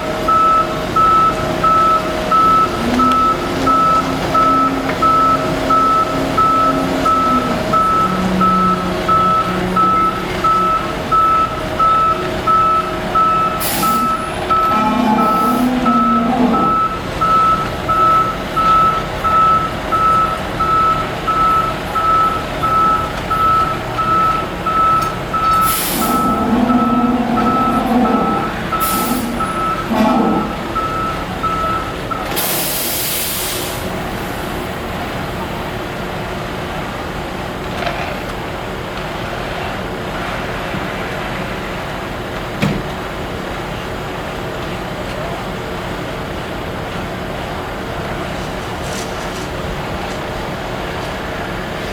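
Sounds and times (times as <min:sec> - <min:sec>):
truck engine running: 0:00.0 - 0:51.9
reversing alarm beeps: 0:00.3 - 0:33.2.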